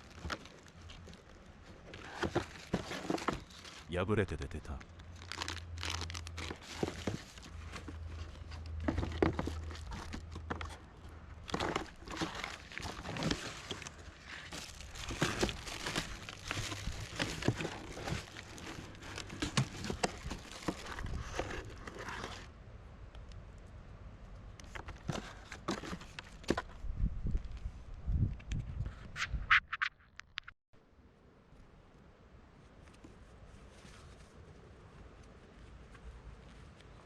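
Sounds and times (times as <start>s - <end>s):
packaging crinkling and rustling: 0.0s - 4.0s, 4.6s - 22.5s.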